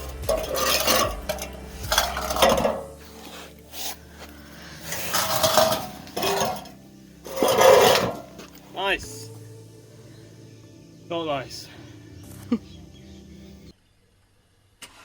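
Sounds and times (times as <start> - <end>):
metal clanking and scraping: 0.0 - 8.6.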